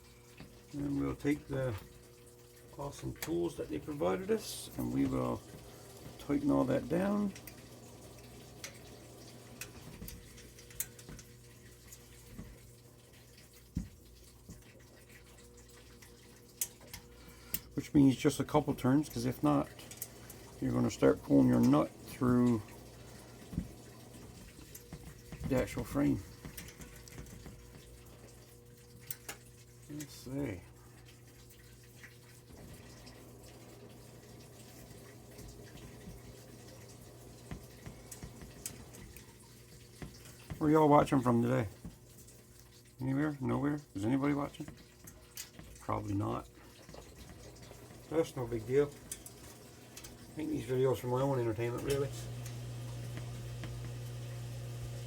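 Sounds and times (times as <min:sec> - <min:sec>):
washing machine humming: 0:00.0 - 0:55.0
water sloshing: 0:18.2 - 0:55.0.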